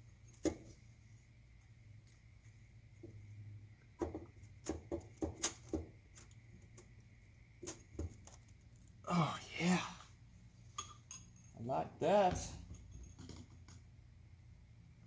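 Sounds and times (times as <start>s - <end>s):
metal tools clinking: 10.7s - 11.6s.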